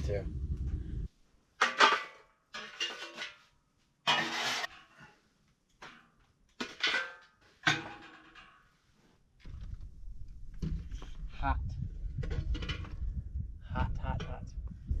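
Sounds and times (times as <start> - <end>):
metal stove parts clanking: 1.6 - 3.4, 4.1 - 4.9, 5.8 - 8.6.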